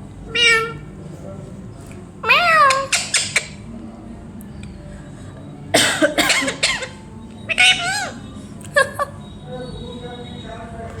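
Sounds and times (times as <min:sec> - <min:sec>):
parrot harsh calls: 0:00.3 - 0:00.8, 0:02.2 - 0:03.7, 0:06.3 - 0:08.3.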